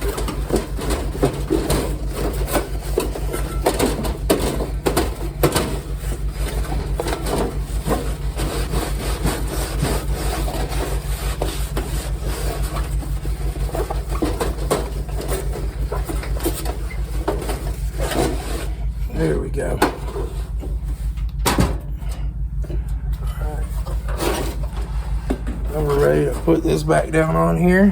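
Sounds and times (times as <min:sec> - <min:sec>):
scrubbing on metal: 0:00.0 - 0:27.9
steady low hum: 0:00.0 - 0:27.9.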